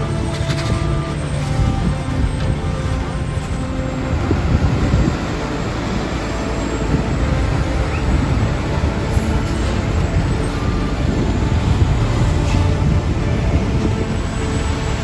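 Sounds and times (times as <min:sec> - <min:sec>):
heavy diesel engines rumbling: 0:00.0 - 0:15.0.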